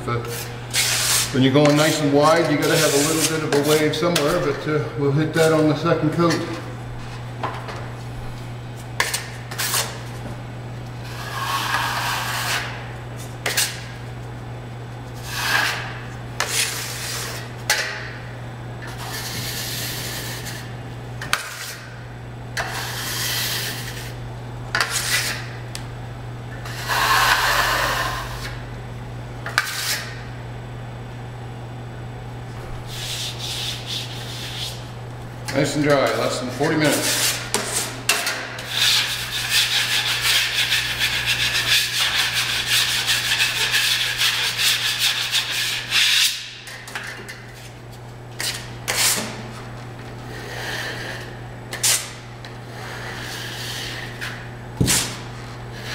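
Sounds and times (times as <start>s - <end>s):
steady low hum: 0.0s - 55.9s
hand tool rubbing plaster: 0.3s - 4.4s, 11.0s - 12.8s, 26.6s - 28.6s, 32.9s - 34.9s, 36.0s - 38.0s, 38.6s - 46.4s, 52.7s - 54.4s.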